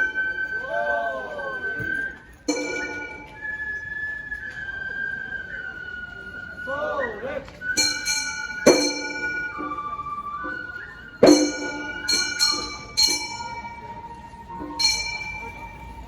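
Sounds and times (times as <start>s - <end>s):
transverse flute high notes: 0.0s - 16.0s.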